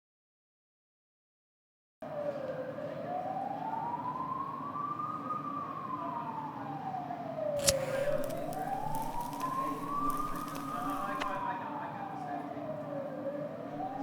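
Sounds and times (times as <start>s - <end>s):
emergency siren wailing: 2.0s - 14.0s
sharp click: 7.6s - 11.4s.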